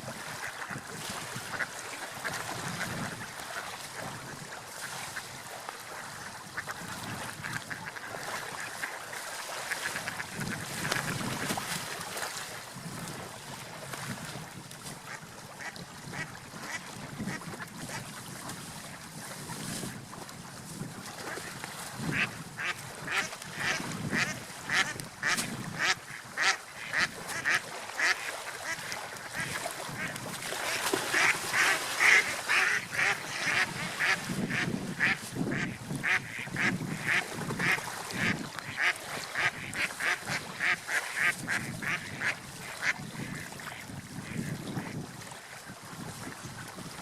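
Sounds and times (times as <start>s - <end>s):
ducks quacking: 6.5s - 9.0s, 22.1s - 45.0s.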